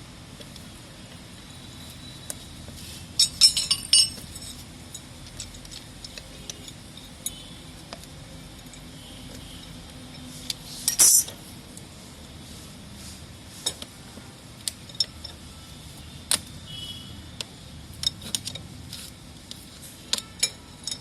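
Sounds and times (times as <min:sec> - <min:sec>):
low steady background noise: 0:00.0 - 0:21.0
hard objects clinking: 0:03.2 - 0:07.6, 0:10.8 - 0:11.4.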